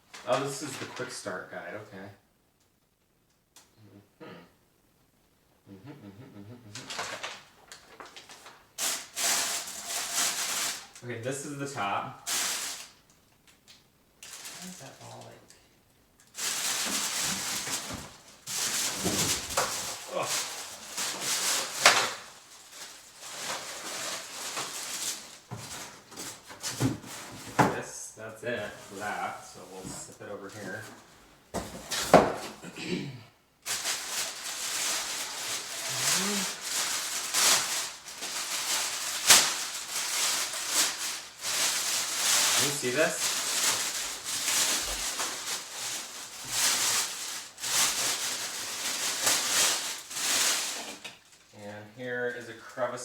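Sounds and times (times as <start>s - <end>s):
plastic packaging crinkling: 6.9s - 11.0s, 11.8s - 15.4s, 16.2s - 27.7s, 33.6s - 51.6s.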